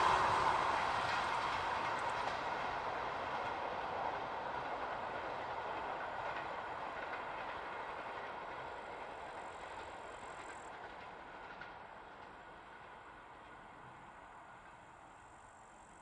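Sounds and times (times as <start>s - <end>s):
train running noise: 0.0s - 16.0s.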